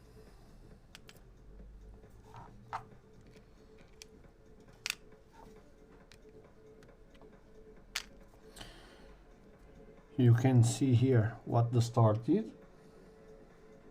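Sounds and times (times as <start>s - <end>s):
small magazine parts clicking: 0.9s - 1.2s, 3.2s - 4.2s, 4.8s - 5.1s, 8.0s - 8.2s.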